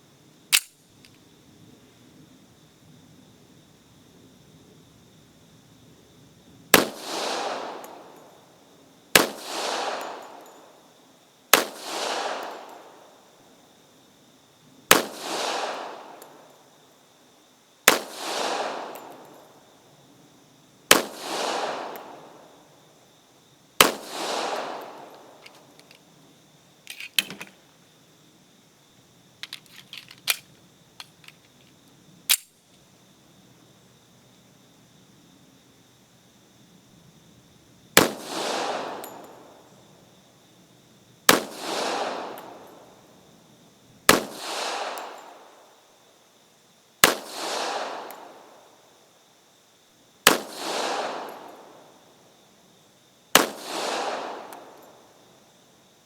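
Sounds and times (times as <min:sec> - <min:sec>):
metallic clicks of pistol: 0:00.5 - 0:01.2, 0:25.4 - 0:26.0, 0:26.9 - 0:27.6, 0:29.4 - 0:31.6, 0:32.3 - 0:32.6
pistol shots with echo: 0:06.8 - 0:08.3, 0:09.1 - 0:10.7, 0:11.5 - 0:13.1, 0:14.9 - 0:16.4, 0:17.9 - 0:19.2, 0:20.9 - 0:22.4, 0:23.8 - 0:25.4, 0:38.0 - 0:39.6, 0:41.3 - 0:42.9, 0:44.1 - 0:45.5, 0:47.0 - 0:48.5, 0:50.2 - 0:51.8, 0:53.4 - 0:55.0.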